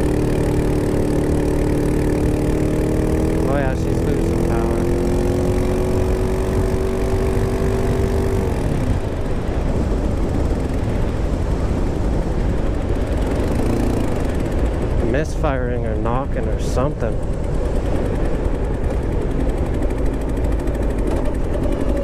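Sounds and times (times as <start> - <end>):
motorcycle engine knocking and misfiring: 15.9 - 22.0.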